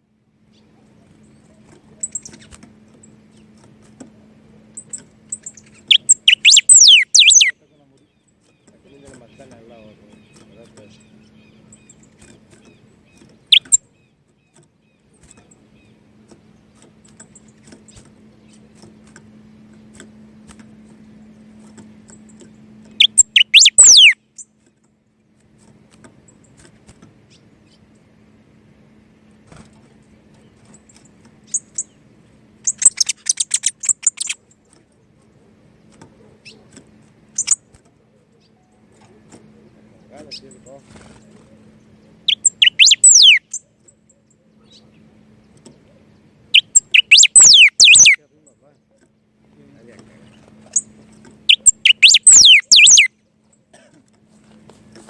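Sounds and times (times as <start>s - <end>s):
faint low hum: 0.0s - 55.0s
songbird chirping and singing: 4.8s - 16.8s, 21.0s - 24.5s, 32.6s - 34.4s, 41.6s - 53.1s.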